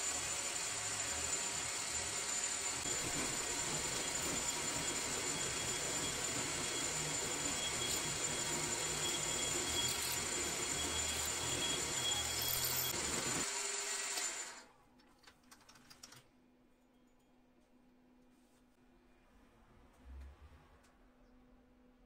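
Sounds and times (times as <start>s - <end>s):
power tool whining: 0.0s - 14.6s.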